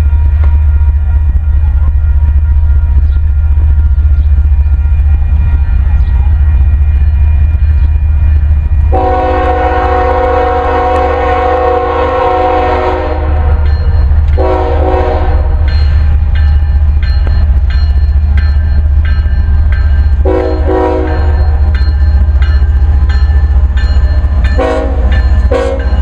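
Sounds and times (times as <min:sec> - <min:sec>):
low rumble of passing train: 0:00.0 - 0:26.0
locomotive air horn chord: 0:08.9 - 0:13.6, 0:14.4 - 0:15.6, 0:20.2 - 0:21.3, 0:24.6 - 0:25.9.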